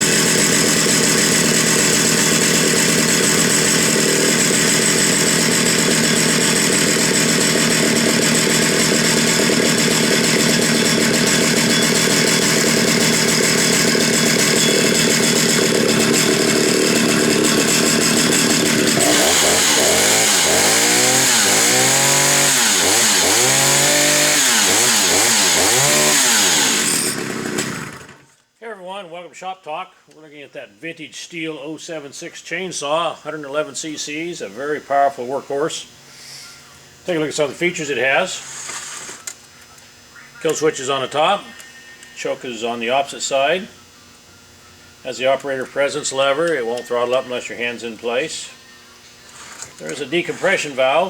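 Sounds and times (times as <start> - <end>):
chainsaw revving: 0.0 - 28.3, 49.8 - 51.0.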